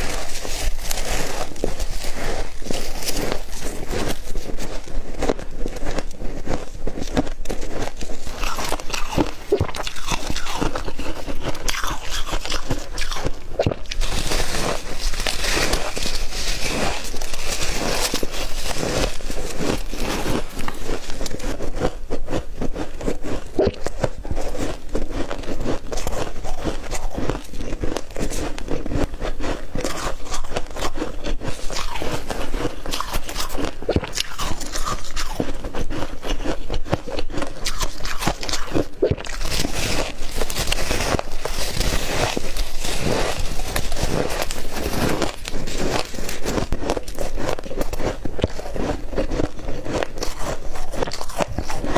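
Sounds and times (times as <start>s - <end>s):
ice crunching while chewed: 0.0s - 51.9s.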